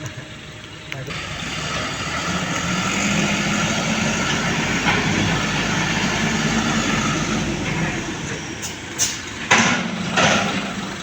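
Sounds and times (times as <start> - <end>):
loader engine running: 0.0 - 11.0.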